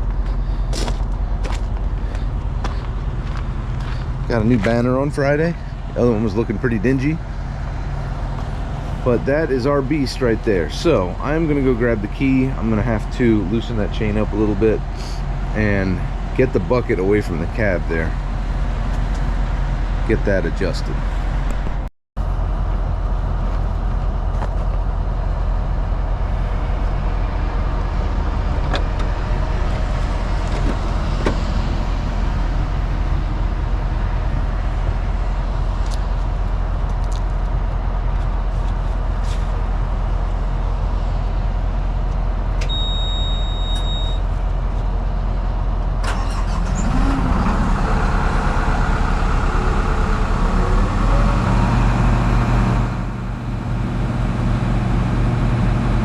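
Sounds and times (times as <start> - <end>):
diesel machinery engine running: 0.0 - 56.0
short high beep: 42.7 - 44.2.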